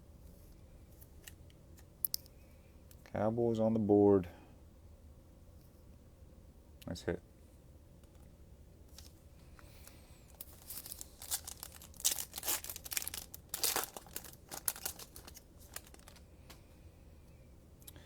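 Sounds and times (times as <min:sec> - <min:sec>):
plastic wrapper crinkling: 0:08.9 - 0:16.6.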